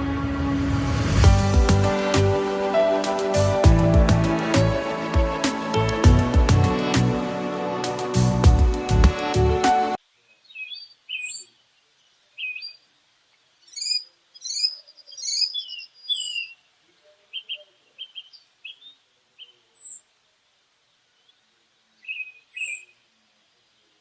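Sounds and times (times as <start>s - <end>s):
small birds chirping: 10.2s - 24.0s.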